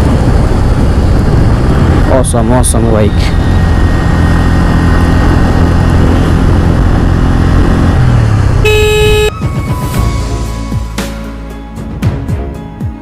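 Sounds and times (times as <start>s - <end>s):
wind rush: 0.0s - 8.7s
motorcycle engine: 0.0s - 10.0s
motorcycle horn blast: 8.6s - 9.4s
background music: 9.0s - 13.0s.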